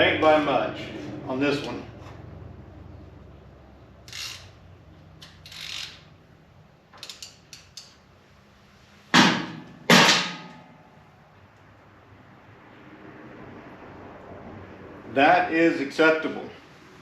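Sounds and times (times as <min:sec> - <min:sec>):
metal clicks and scrapes: 0:05.2 - 0:06.1, 0:07.0 - 0:08.0.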